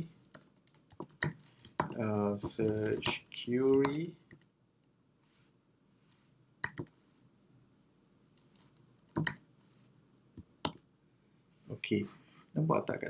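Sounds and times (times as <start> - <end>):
keyboard keys clicking: 0.3 - 4.1, 6.6 - 6.9, 8.6 - 9.4.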